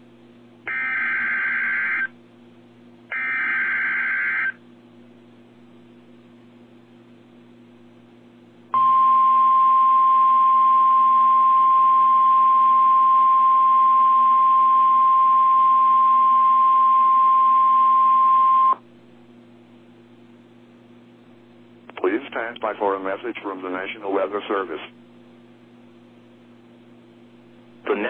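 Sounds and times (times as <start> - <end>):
steady alarm tone: 0.7 - 2.2, 3.1 - 4.6
radio hiss with faint hum: 21.8 - 25.1, 27.8 - 28.0.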